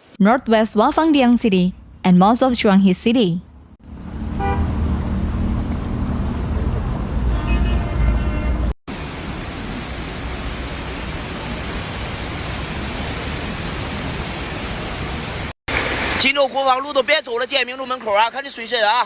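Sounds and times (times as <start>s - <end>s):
torrential rain: 8.9s - 16.4s
rushing floodwater: 8.9s - 18.1s.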